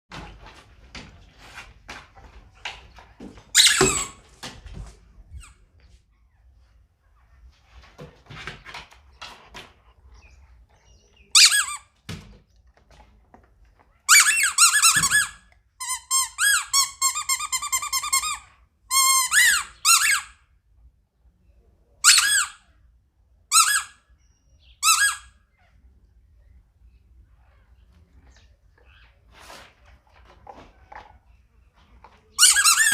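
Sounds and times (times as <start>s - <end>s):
squeaky toy squeaking: 3.5s - 4.2s, 11.3s - 11.9s, 14.1s - 20.4s, 22.0s - 22.7s, 23.5s - 24.0s, 24.6s - 25.4s, 32.3s - 32.9s.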